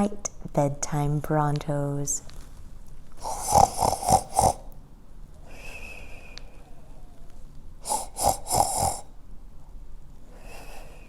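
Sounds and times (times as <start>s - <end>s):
person imitating comic snoring: 3.2s - 4.8s, 7.8s - 9.1s.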